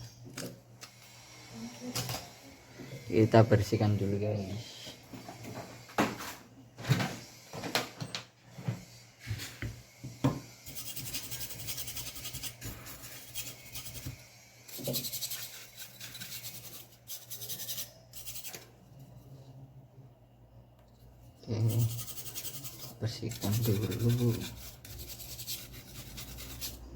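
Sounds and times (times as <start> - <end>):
brisk scrubbing strokes: 10.6 - 18.6, 21.4 - 26.9.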